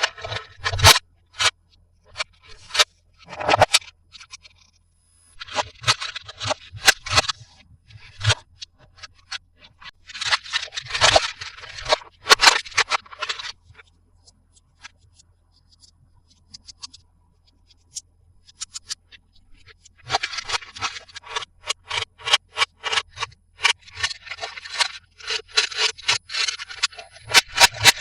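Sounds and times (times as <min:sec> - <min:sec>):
toy packaging scraping and rustling: 0:00.0 - 0:01.5, 0:02.1 - 0:04.5, 0:05.4 - 0:07.4, 0:08.0 - 0:13.7, 0:19.6 - 0:28.0.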